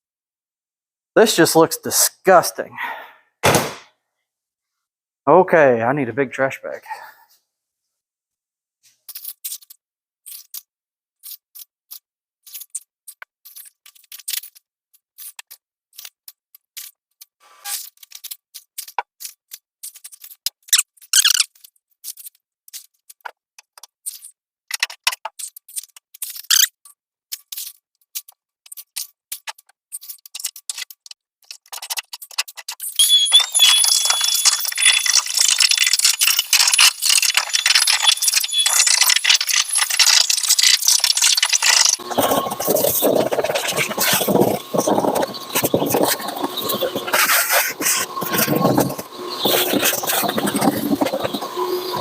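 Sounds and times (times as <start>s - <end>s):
thin high whine: 33.0s - 52.0s.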